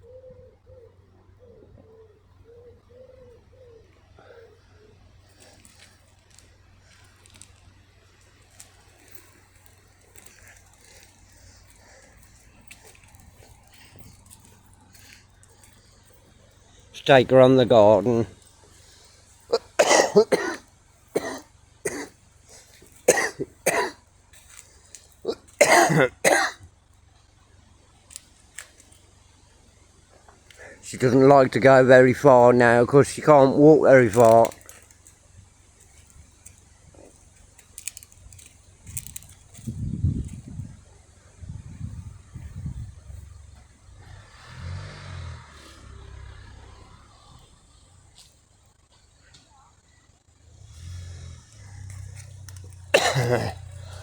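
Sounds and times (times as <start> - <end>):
harsh coughs: 19.5 - 20.6, 21.2 - 24.0, 25.3 - 26.6, 52.9 - 54.0
faint clicks: 34.1 - 35.2, 50.8 - 52.9
car passing: 41.7 - 48.8, 50.3 - 54.0.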